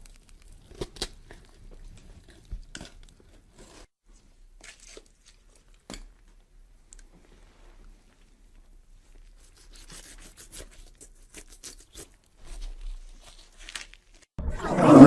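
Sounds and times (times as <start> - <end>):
crackling and tearing noises: 0.0 - 3.9, 9.2 - 14.3
loud roar: 14.4 - 15.0.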